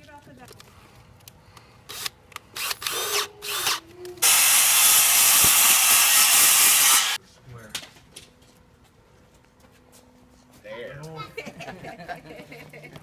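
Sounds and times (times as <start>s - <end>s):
power drill driving screws into wood: 1.9s - 7.2s.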